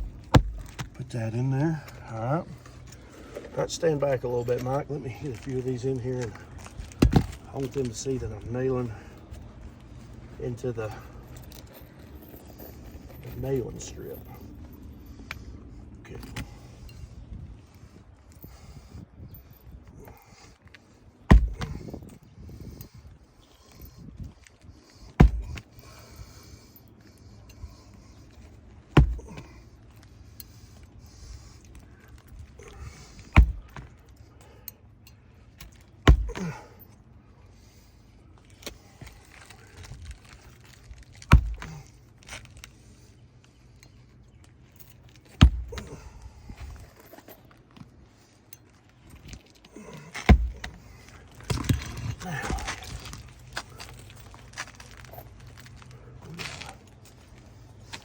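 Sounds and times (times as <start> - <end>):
shingles rustling and scraping: 0.0 - 15.4, 35.2 - 58.0.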